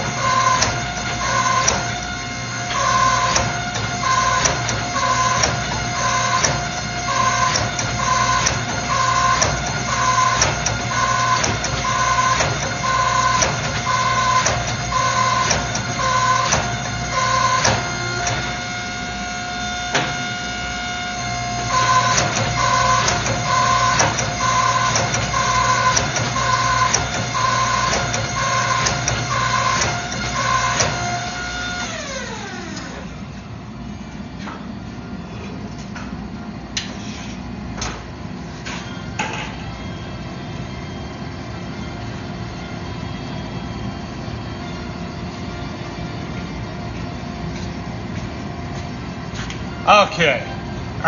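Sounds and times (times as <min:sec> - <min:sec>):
motor hum: 0:00.0 - 0:36.6.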